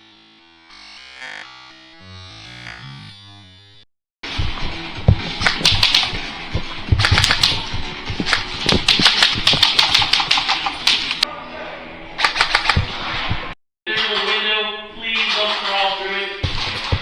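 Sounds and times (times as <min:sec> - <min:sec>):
music: 0:04.2 - 0:17.0
airsoft guns firing bursts: 0:05.3 - 0:11.2, 0:12.2 - 0:12.9.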